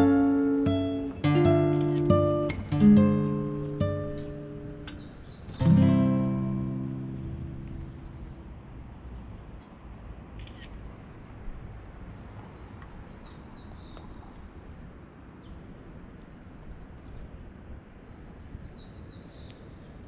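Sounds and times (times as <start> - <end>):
bird chirping: 0.0 - 8.4.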